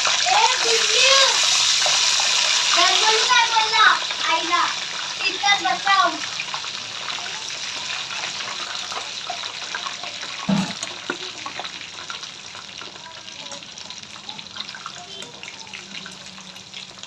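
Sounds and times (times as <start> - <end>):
food deep-frying in oil: 0.0 - 17.0
dull knock: 10.5 - 10.8.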